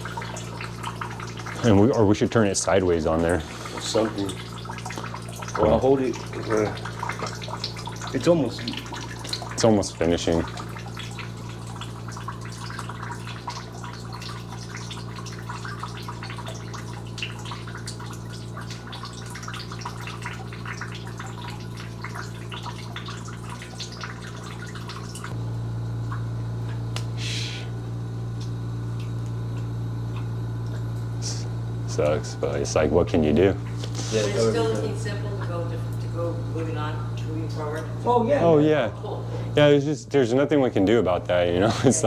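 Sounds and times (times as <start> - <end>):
water dripping into a bucket: 0.0 - 39.5
low hum: 19.8 - 38.4.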